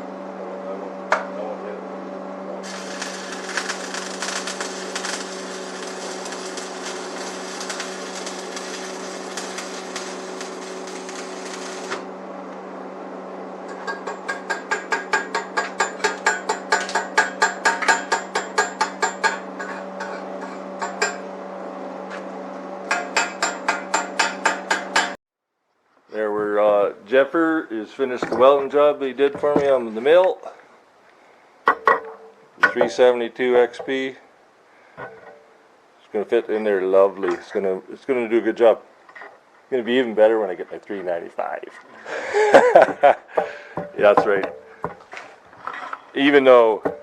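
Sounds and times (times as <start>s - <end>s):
arc welder crackling hiss: 2.6s - 12.1s, 41.3s - 45.5s
hammer tapping metal: 13.7s - 20.2s, 20.8s - 21.2s, 22.9s - 25.2s.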